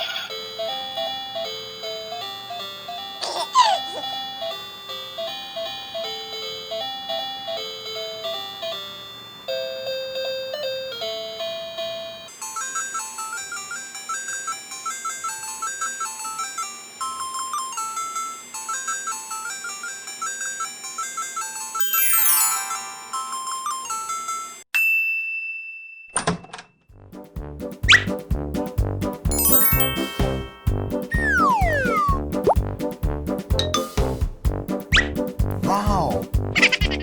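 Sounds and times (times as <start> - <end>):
instrumental background music: 21.8 - 23.5, 27.0 - 37.0.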